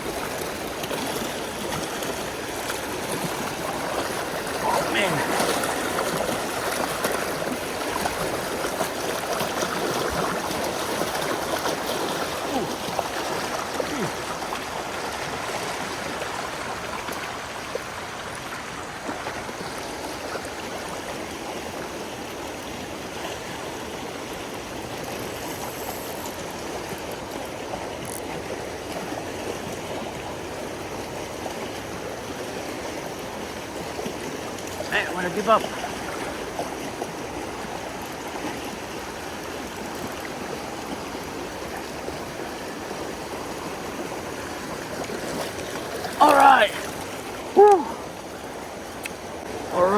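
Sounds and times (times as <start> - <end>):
creek water running: 0.0 - 49.9.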